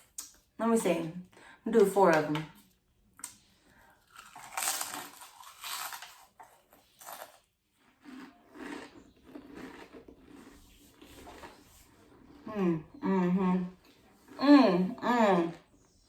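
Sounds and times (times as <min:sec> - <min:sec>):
chewing: 0:03.2 - 0:13.0
crisps crunching: 0:04.0 - 0:12.4.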